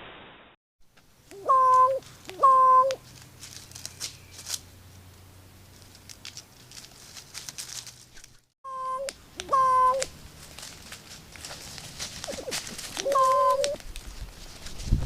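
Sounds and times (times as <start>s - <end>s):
crow calling: 1.4s - 3.0s.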